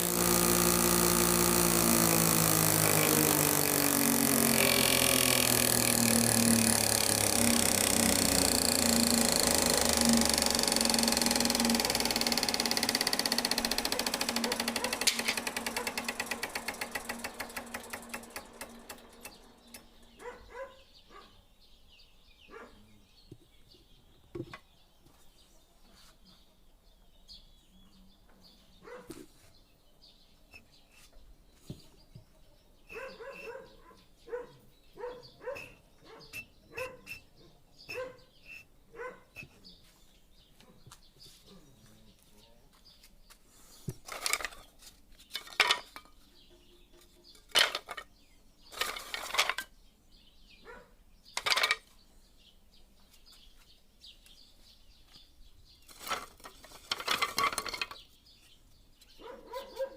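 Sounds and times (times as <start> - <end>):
power tool motor spinning down: 0.0 - 20.1.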